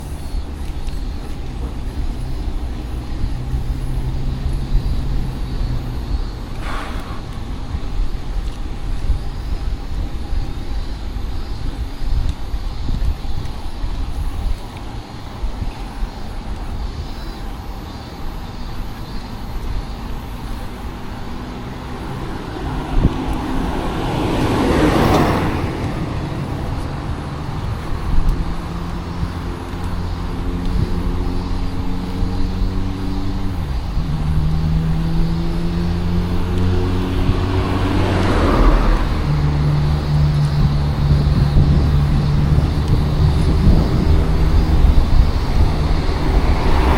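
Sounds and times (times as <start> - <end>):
hum of running engines: 0.0 - 46.9
car passing close by: 2.8 - 8.6, 19.8 - 46.9.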